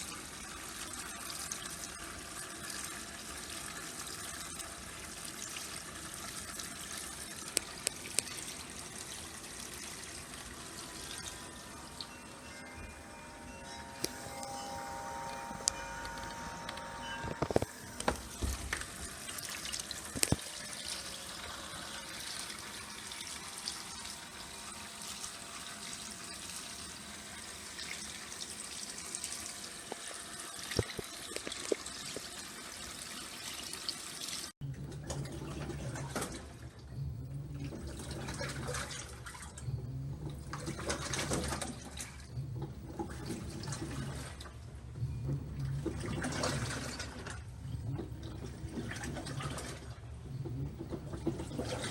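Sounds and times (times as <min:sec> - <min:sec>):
washing machine filling with water: 0:00.0 - 0:51.9
water swishing in drum: 0:07.5 - 0:25.2, 0:34.6 - 0:51.9
low motor hum: 0:10.1 - 0:25.1, 0:36.8 - 0:38.8, 0:39.5 - 0:41.6, 0:42.3 - 0:51.9.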